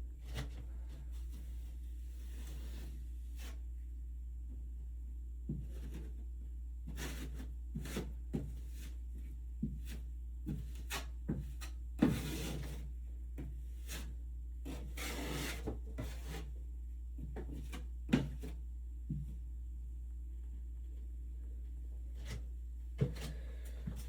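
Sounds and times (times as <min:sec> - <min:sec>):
tool scraping drywall: 0:01.2 - 0:03.6, 0:06.9 - 0:09.0, 0:09.9 - 0:12.9, 0:13.8 - 0:16.6.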